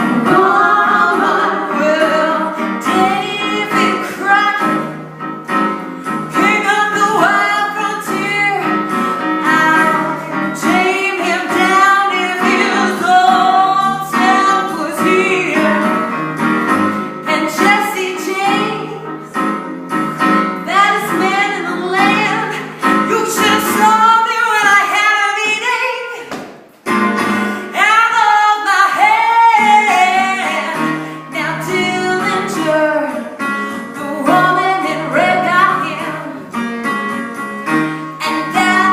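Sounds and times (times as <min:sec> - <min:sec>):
woman singing: 0:00.0 - 0:05.0, 0:06.3 - 0:16.2, 0:17.2 - 0:19.3, 0:20.6 - 0:26.3, 0:27.7 - 0:36.6, 0:38.2 - 0:38.9
instrumental accompaniment: 0:26.3 - 0:27.8.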